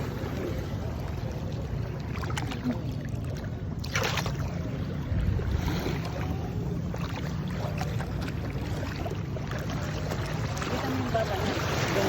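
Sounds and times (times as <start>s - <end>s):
surf washing in: 3.8s - 12.0s
wind buffeting microphone: 4.9s - 6.9s.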